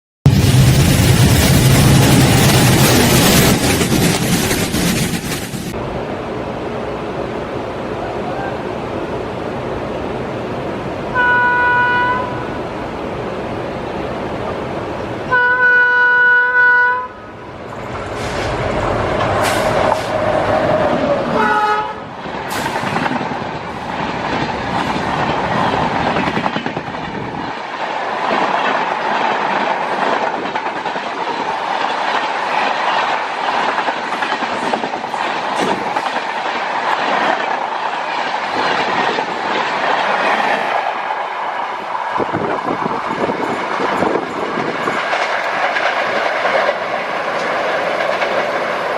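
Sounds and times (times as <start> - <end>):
train wheels clattering: 0.3 - 5.8, 17.7 - 21.0, 22.2 - 41.3, 42.2 - 48.9
train horn blasts: 11.1 - 12.6, 15.3 - 17.3, 21.3 - 22.0.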